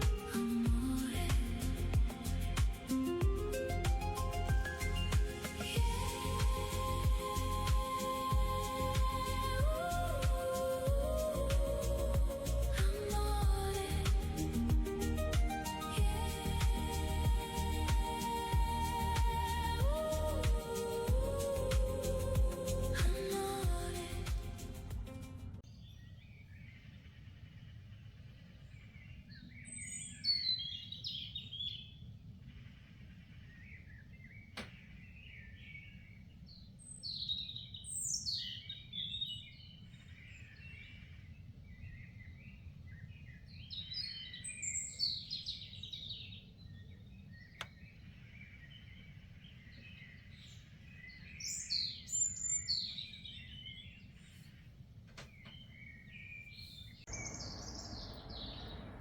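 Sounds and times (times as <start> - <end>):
steady low rumble: 0.0 - 25.6, 56.9 - 59.0
songbirds singing: 0.0 - 59.0.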